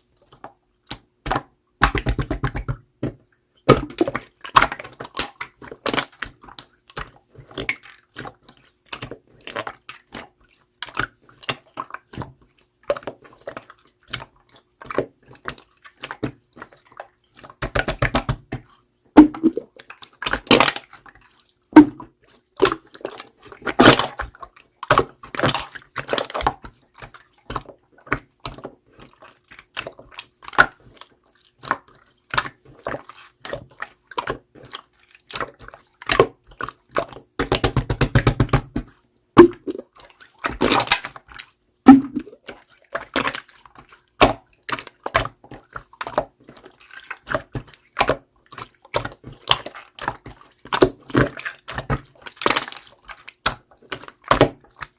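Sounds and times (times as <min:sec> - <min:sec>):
slime squeezed with sticky pops: 0:19.2 - 0:19.7, 0:35.3 - 0:39.8, 0:41.9 - 0:42.4.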